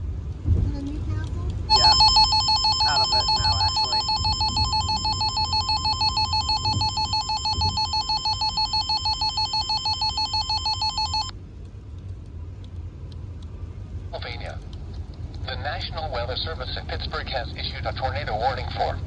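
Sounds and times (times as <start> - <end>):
low background hum: 0.0 - 19.0
pulsing electronic alarm tone: 1.7 - 11.3.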